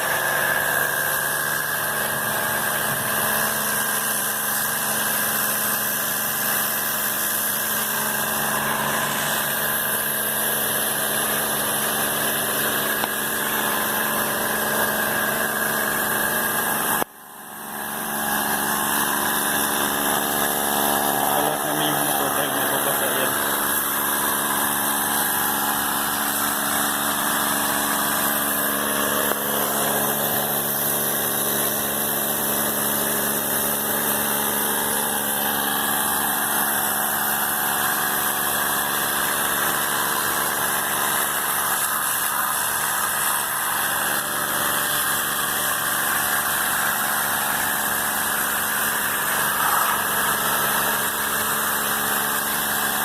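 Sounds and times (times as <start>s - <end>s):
machine motor humming: 0.0s - 53.0s.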